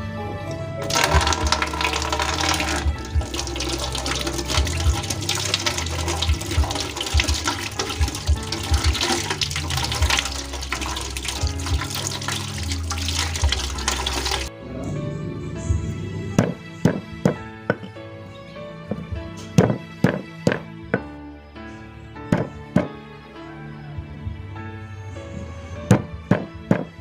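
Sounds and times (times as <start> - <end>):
background music: 0.0 - 27.0
water pouring: 0.8 - 14.5.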